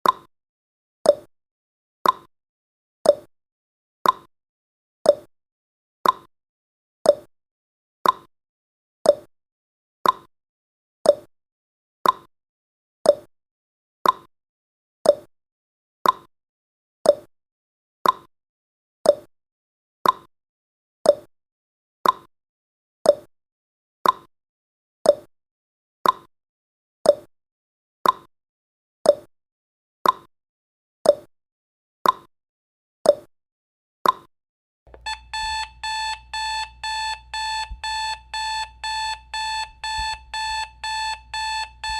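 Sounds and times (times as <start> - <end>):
clock ticking: 34.9 - 41.9.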